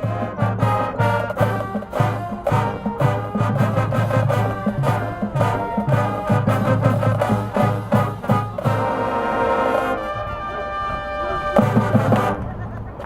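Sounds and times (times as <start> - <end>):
drum hits: 0.0 - 9.0
marching band brass: 0.0 - 12.8.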